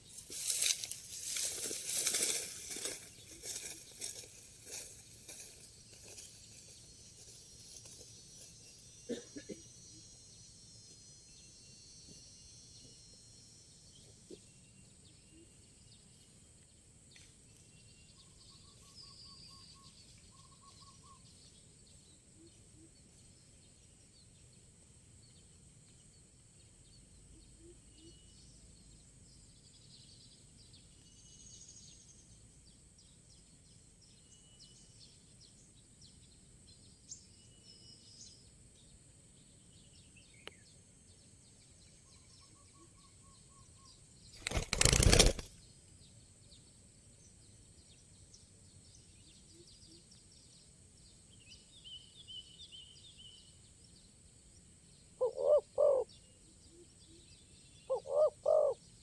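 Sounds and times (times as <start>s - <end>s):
small birds chirping: 0.0s - 9.5s, 25.2s - 59.0s
high-pitched insect hum: 0.0s - 16.4s
bird trills: 55.2s - 56.1s, 57.9s - 58.8s.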